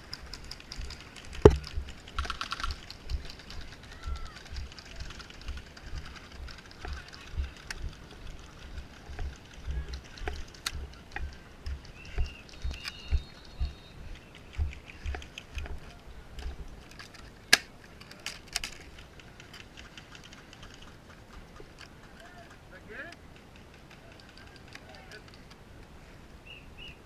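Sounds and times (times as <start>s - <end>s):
running footsteps thumping: 0.0s - 16.7s
gear clicking: 0.0s - 25.6s
sharp crack: 17.4s - 19.0s.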